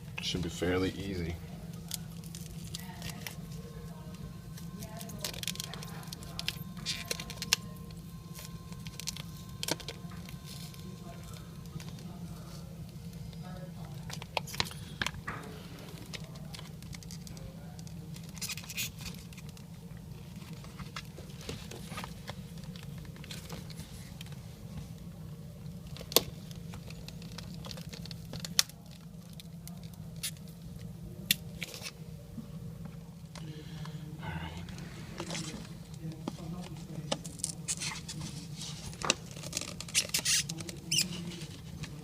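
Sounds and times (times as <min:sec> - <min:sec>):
steady low hum: 0:00.0 - 0:42.0
adhesive crackling as it peels: 0:04.6 - 0:12.6, 0:15.9 - 0:24.3, 0:36.6 - 0:42.0.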